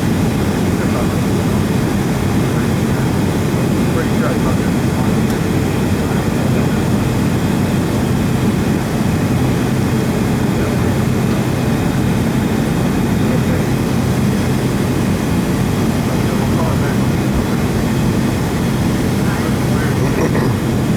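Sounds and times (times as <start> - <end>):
aircraft engine cabin drone: 0.0 - 20.9.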